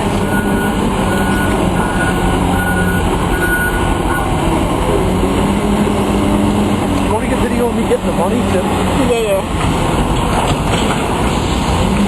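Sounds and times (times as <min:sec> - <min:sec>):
diesel engine running: 0:00.0 - 0:12.0
reversing alarm beeps: 0:00.3 - 0:04.3.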